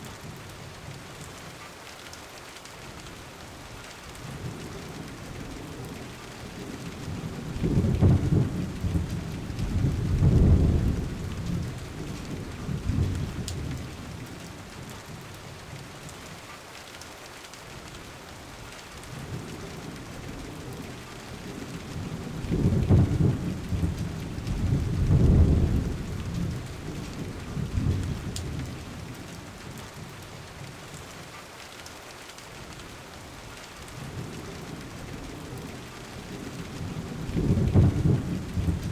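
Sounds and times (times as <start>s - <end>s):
steady rain hiss: 0.0s - 38.9s
low rolls of thunder: 4.2s - 14.8s, 19.1s - 30.1s, 34.0s - 38.9s.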